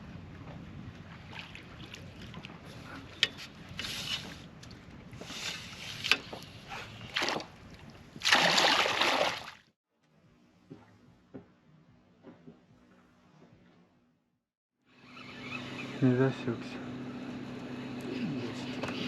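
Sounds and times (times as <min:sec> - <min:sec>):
water splashing around boat: 0:00.0 - 0:09.7.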